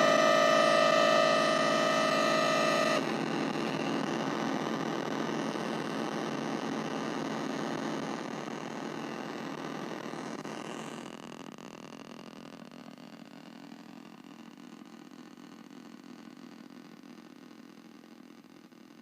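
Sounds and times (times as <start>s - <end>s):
synthesizer drone: 0.0s - 3.1s.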